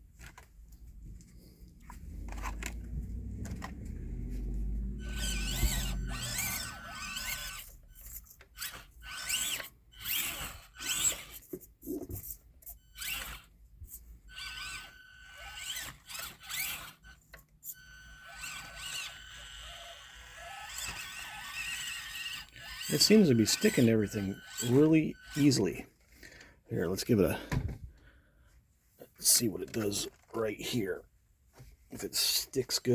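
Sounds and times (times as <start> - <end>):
small electric motor whining: 2.1 - 25.9
thin steady high tone: 4.4 - 8.2.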